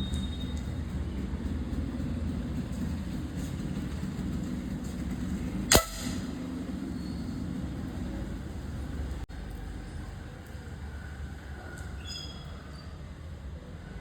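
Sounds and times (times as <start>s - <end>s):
air pistol shot with ringing: 5.7s - 6.4s.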